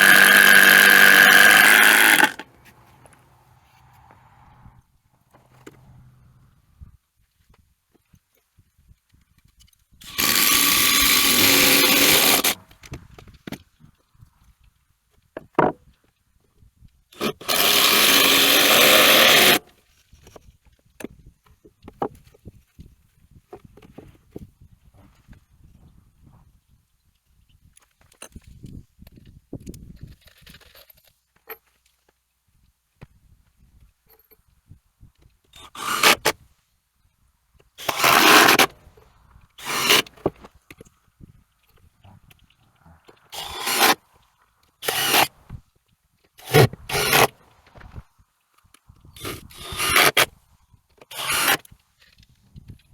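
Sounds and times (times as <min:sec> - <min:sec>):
power tool running into wood: 0:00.0 - 0:02.5, 0:10.0 - 0:12.6, 0:17.2 - 0:19.6, 0:35.6 - 0:36.3, 0:37.8 - 0:38.7, 0:39.6 - 0:40.2, 0:43.4 - 0:44.0, 0:44.8 - 0:45.3, 0:46.4 - 0:47.3, 0:49.2 - 0:50.2, 0:51.1 - 0:51.6
wooden boards scraping: 0:00.0 - 0:03.2, 0:10.0 - 0:12.8, 0:17.2 - 0:19.6, 0:35.6 - 0:36.3, 0:37.8 - 0:38.9, 0:39.6 - 0:40.5, 0:43.2 - 0:44.0, 0:44.8 - 0:45.5, 0:46.4 - 0:48.0, 0:49.2 - 0:50.3, 0:51.0 - 0:51.7.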